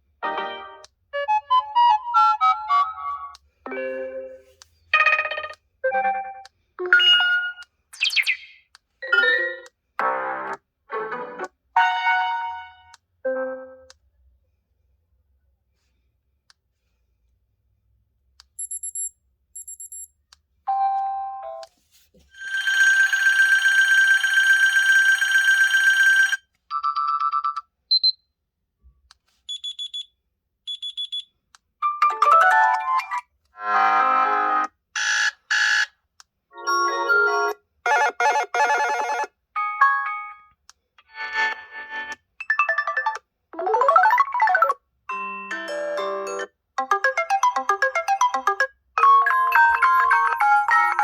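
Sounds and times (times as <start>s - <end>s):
smartphone electronic tones: 37.9s - 39.3s.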